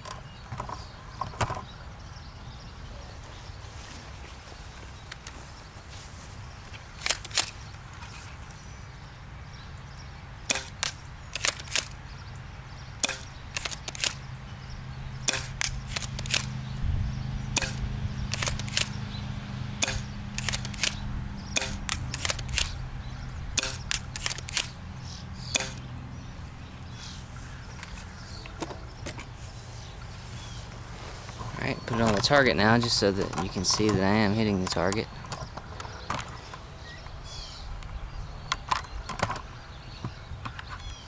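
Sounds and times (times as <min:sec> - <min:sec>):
steady low hum: 0:00.3 - 0:38.4
airsoft shotgun clacks: 0:10.5 - 0:12.0, 0:13.0 - 0:14.2, 0:15.3 - 0:16.5, 0:17.6 - 0:19.0, 0:19.8 - 0:21.0, 0:21.6 - 0:22.8, 0:23.6 - 0:24.8, 0:25.6 - 0:25.8.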